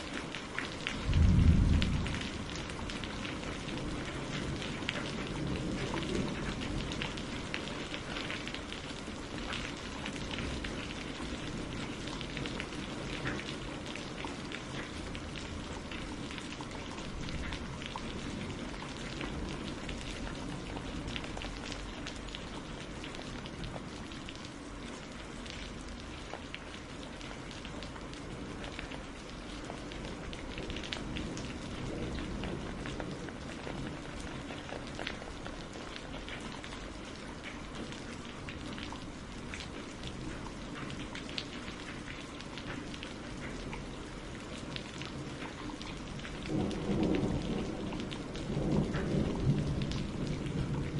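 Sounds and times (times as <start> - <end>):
steady rain falling: 0.0 - 50.9.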